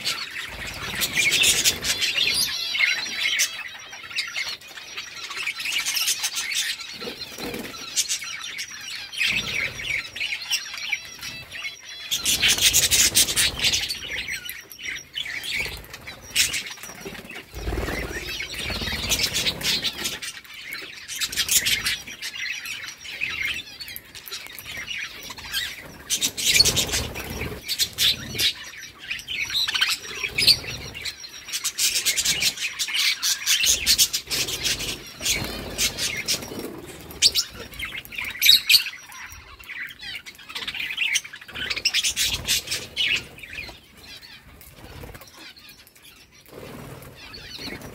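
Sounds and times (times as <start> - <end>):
budgerigars chirping: 0.0 - 47.9
wings flapping: 15.6 - 20.2, 33.8 - 37.5, 46.5 - 47.9.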